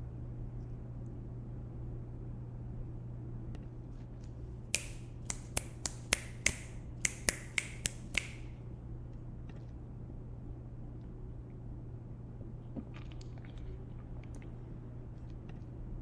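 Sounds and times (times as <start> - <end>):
fingers snapping: 4.8 - 8.5.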